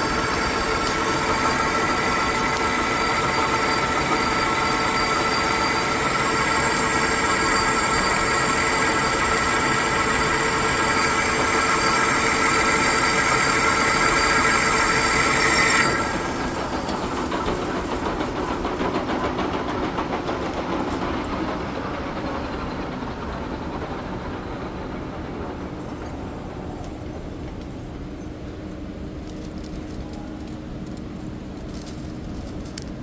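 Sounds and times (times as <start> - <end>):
high-pitched ringing of cutting tool: 0.0 - 18.2
metal lathe cutting: 0.0 - 19.3.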